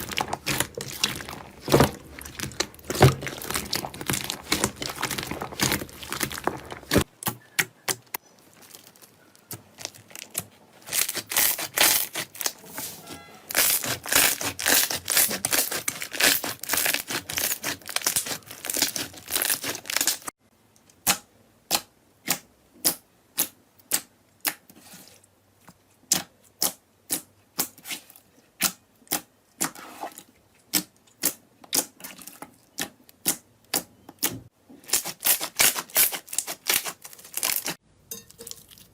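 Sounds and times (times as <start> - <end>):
slime crackling and popping: 0.0 - 12.6, 13.5 - 20.3, 34.9 - 37.8.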